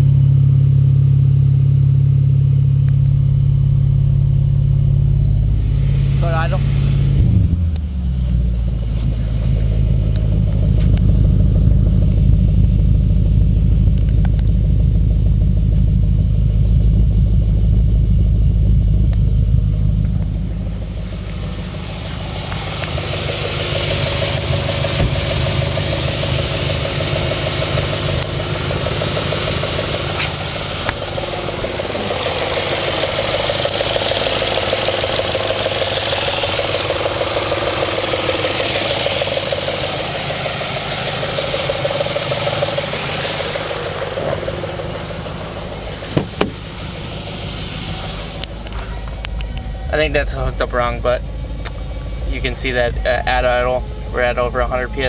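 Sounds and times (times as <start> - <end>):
car engine idling: 0.0 - 55.0.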